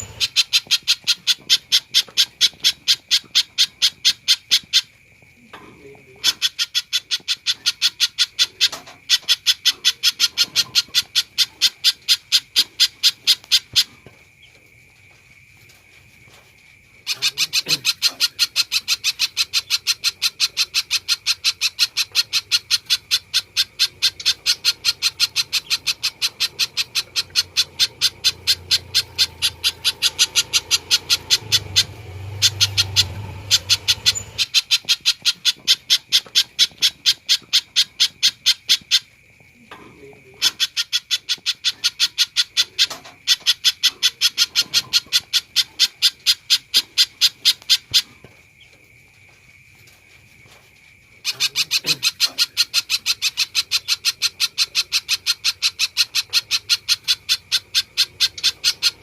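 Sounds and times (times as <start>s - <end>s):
bird calling sharp notes: 0.0s - 4.9s, 17.1s - 39.0s, 51.2s - 59.0s.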